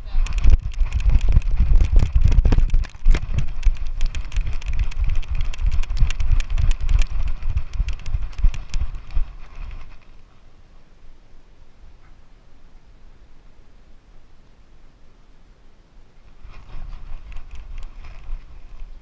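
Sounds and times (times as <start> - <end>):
camera jostling thumps and clicks: 0.1 - 10.2, 16.4 - 18.9.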